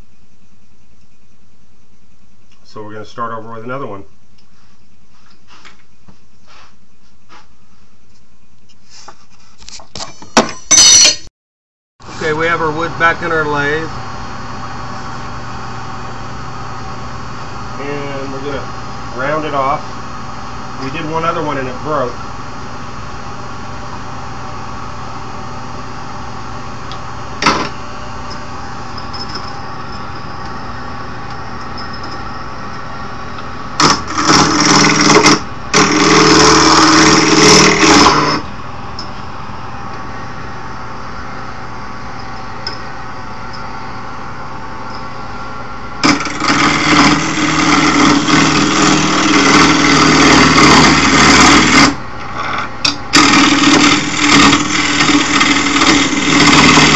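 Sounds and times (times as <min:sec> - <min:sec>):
wood lathe motor humming: 0:12.0 - 0:38.6, 0:46.0 - 0:56.9
turning tool rasping on wood: 0:33.9 - 0:38.4, 0:46.0 - 0:52.0, 0:53.2 - 0:56.9.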